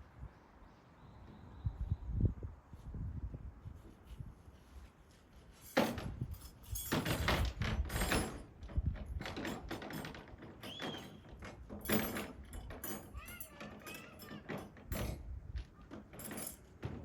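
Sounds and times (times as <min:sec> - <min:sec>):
camping gear clattering: 0:05.3 - 0:17.0.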